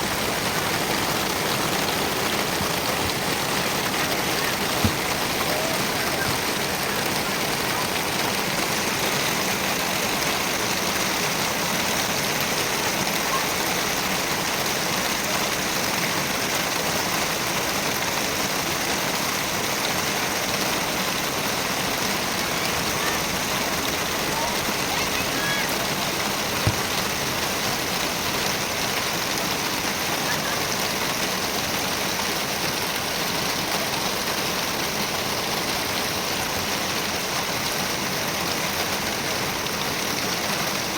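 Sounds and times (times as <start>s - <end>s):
heavy rain: 0.0s - 40.9s
short thump: 26.6s - 27.1s.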